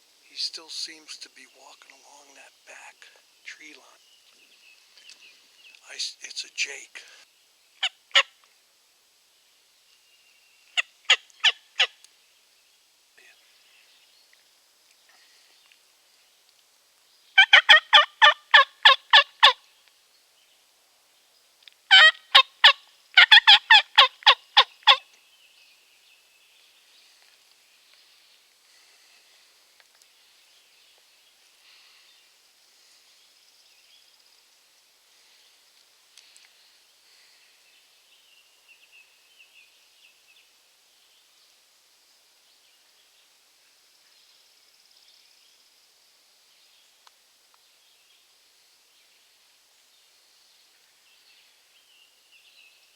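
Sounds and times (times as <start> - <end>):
faint songbird chirps: 0.2 - 8.5, 9.3 - 52.9
turkey call hen yelps: 10.8 - 12.0, 17.4 - 19.6, 21.9 - 25.1.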